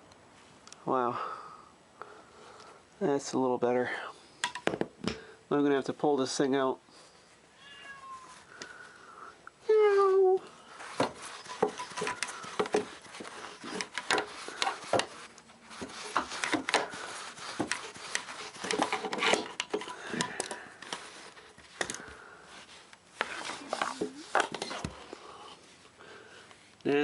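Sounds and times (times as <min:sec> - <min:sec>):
hard objects knocking and clattering: 0:04.4 - 0:05.2, 0:11.0 - 0:15.2, 0:15.8 - 0:20.6.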